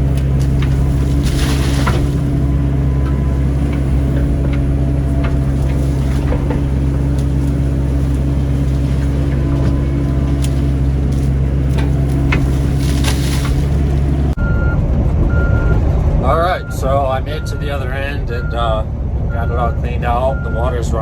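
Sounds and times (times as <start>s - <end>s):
sharp knocks and clanks: 0.0s - 14.3s
excavator diesel engine running: 0.0s - 21.0s.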